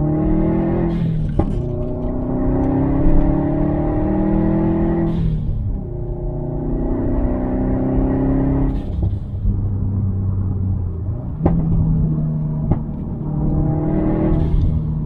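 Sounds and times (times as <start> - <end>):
car engine pulling under load: 0.0 - 15.0
exhaust pops and bangs: 0.6 - 3.4, 10.7 - 13.6.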